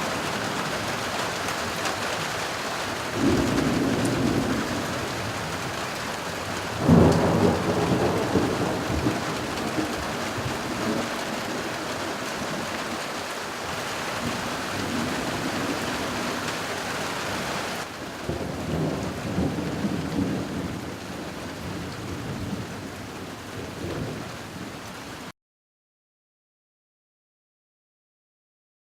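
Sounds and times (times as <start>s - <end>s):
steady rain falling: 0.0s - 25.3s
rolling thunder: 3.1s - 12.7s, 18.1s - 24.7s.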